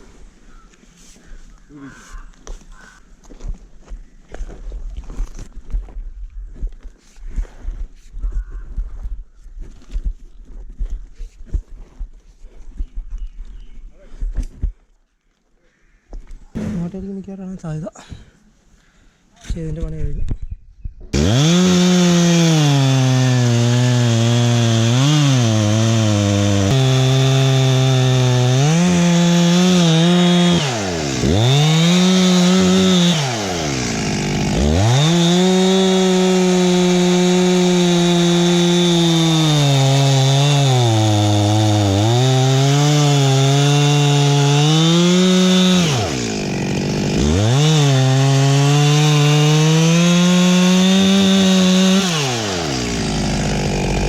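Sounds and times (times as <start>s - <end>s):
chainsaw cutting wood: 21.1s - 54.0s.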